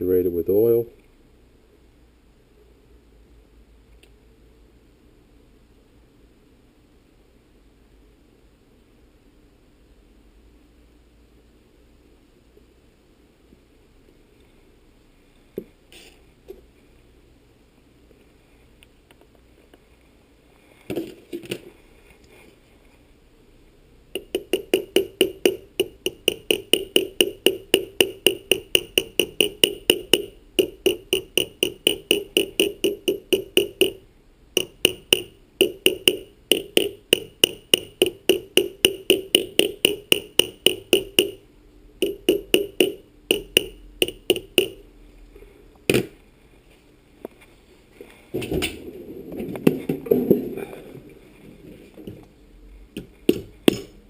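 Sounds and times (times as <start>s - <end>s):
hammer tapping on metal: 24.2s - 34.0s, 34.6s - 41.4s, 42.0s - 44.9s, 53.3s - 54.0s.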